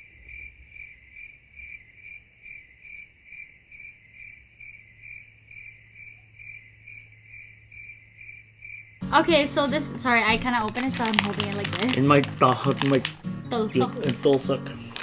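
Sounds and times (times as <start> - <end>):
cricket chirping: 0.0 - 9.0.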